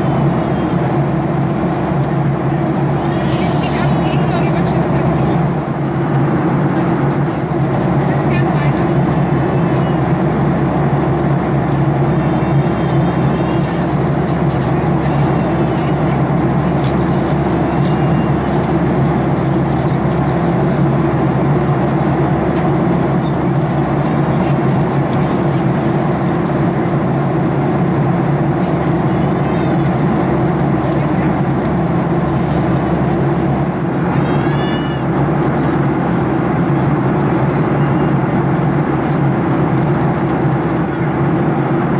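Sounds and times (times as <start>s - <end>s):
airplane cabin drone: 0.0s - 41.9s.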